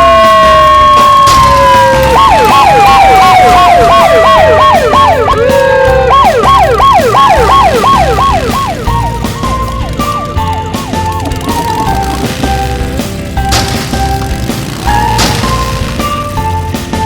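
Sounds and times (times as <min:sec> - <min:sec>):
tone sliding down in pitch: 0:00.0 - 0:13.5
low repeating beat: 0:00.0 - 0:17.0
siren wail: 0:00.0 - 0:17.0.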